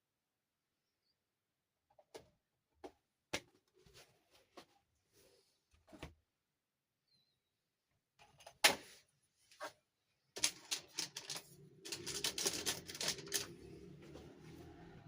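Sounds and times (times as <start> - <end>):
plastic toy pieces clicking: 10.4 - 13.5
rapid clicking and rattling: 10.4 - 13.6.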